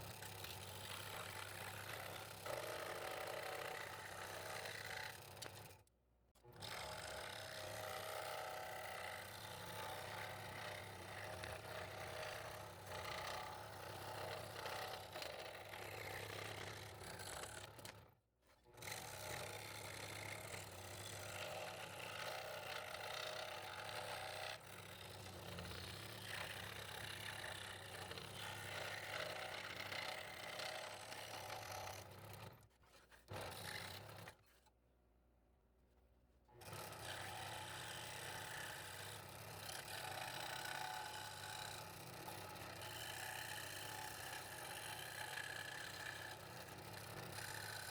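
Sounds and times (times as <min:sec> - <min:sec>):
scroll saw rasping through wood: 0:18.8 - 0:34.7, 0:36.6 - 0:47.9.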